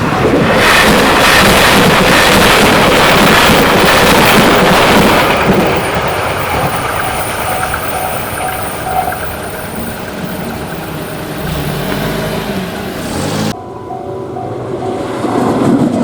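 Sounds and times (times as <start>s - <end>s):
train wheel and rail noise: 0.0s - 16.0s
crossing alarm bell ringing: 2.7s - 12.8s, 13.5s - 15.7s.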